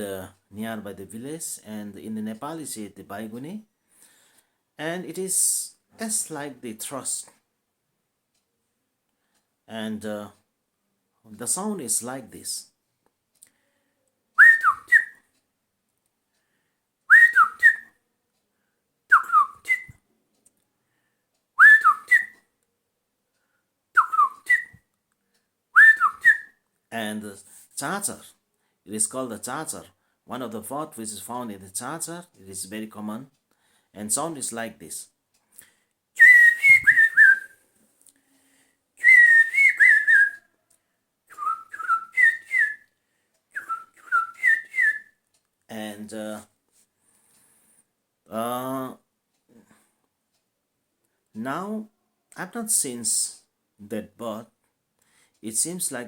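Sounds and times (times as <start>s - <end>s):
person whistling bird call: 14.4s - 15.2s, 17.1s - 17.9s, 19.1s - 20.0s, 21.6s - 22.4s, 24.0s - 24.8s, 25.8s - 26.6s, 36.2s - 37.6s, 39.0s - 40.5s, 41.3s - 42.9s, 43.6s - 45.2s.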